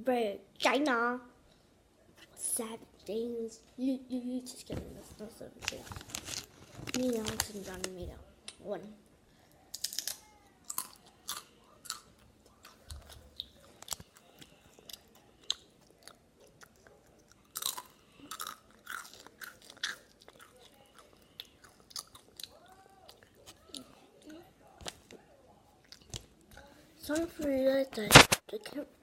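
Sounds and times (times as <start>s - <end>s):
chips crunching: 5.6s - 7.9s, 9.7s - 23.8s.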